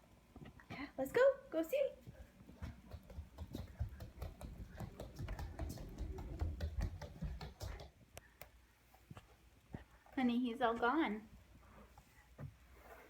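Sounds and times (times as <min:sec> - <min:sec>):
light footsteps on hard floor: 0:02.0 - 0:08.0
knocks of people moving about: 0:02.0 - 0:08.1.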